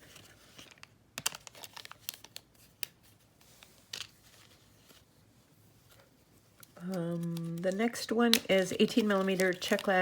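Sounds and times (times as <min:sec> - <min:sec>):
plastic packaging crinkling: 0:00.0 - 0:05.1, 0:05.9 - 0:10.0.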